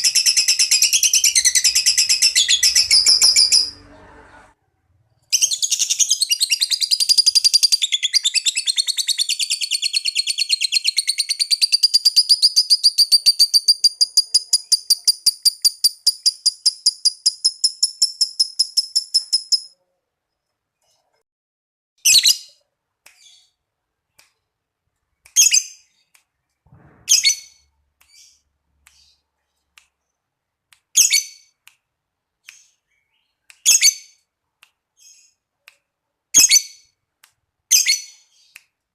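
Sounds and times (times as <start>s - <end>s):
lovebird chattering trill: 0.0s - 3.8s.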